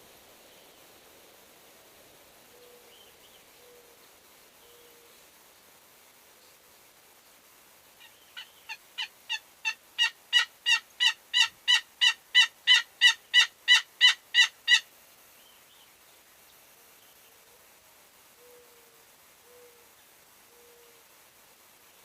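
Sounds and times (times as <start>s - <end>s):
turkey yelps: 8.4s - 14.8s.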